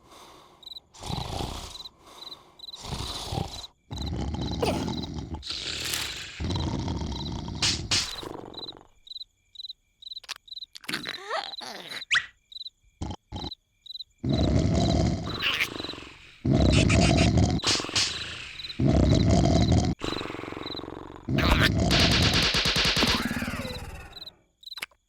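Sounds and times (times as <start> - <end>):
cricket chirping: 0.0 - 25.0
cartoon snoring: 0.9 - 9.0, 13.0 - 13.6, 14.2 - 24.3.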